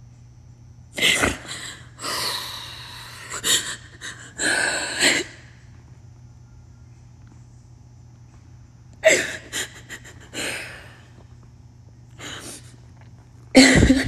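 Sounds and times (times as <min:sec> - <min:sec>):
woman breathing hard and gasping: 0:01.1 - 0:05.4, 0:09.0 - 0:11.1.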